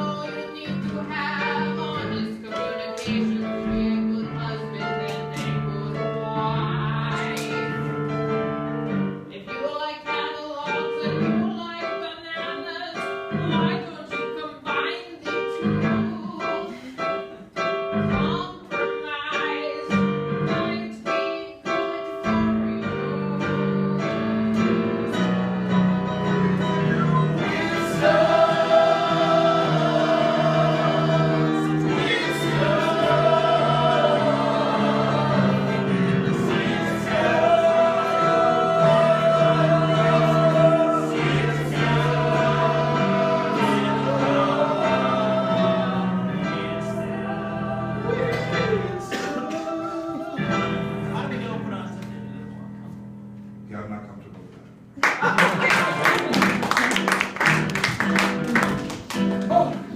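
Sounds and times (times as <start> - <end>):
choir-like singing over instruments: 23.4 - 51.5.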